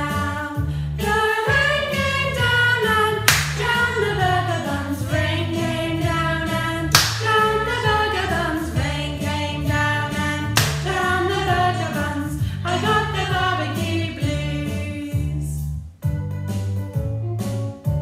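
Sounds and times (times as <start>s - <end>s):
children's song with backing track: 0.0s - 18.0s
sharp percussive hit: 3.3s - 3.8s, 6.9s - 7.4s, 10.6s - 11.1s.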